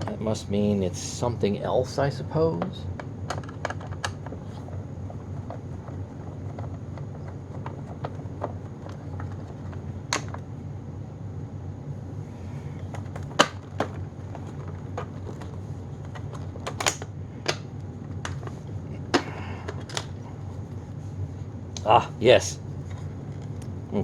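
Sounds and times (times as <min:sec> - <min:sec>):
steady low hum: 0:00.0 - 0:24.0
plastic clicks and knocks: 0:03.3 - 0:10.4, 0:12.8 - 0:17.6.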